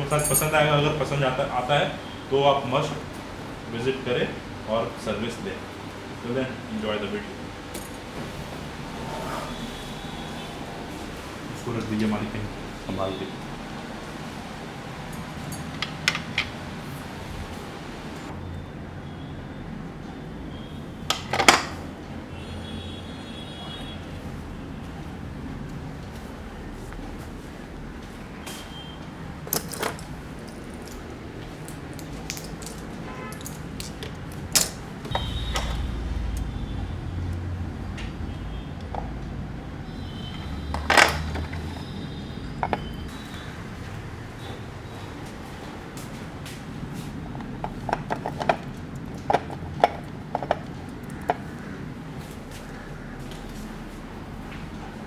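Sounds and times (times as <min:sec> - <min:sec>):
rumble of passing traffic: 0:00.0 - 0:55.0
steady low hum: 0:33.5 - 0:40.6.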